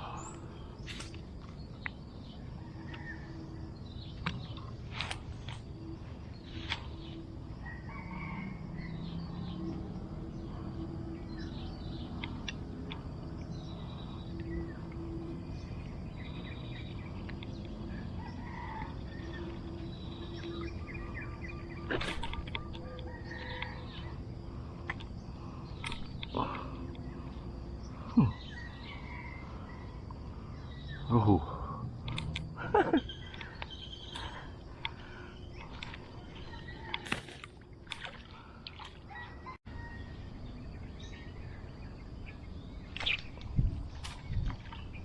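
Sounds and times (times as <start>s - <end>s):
birds calling: 0.0s - 45.0s
sharp clicks: 32.0s - 32.5s.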